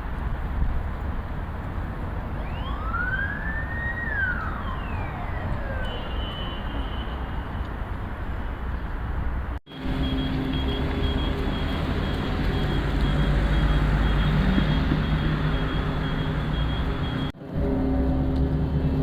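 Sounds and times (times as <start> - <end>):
traffic rumble: 0.0 - 19.0
siren wail: 2.4 - 6.6, 9.8 - 19.0.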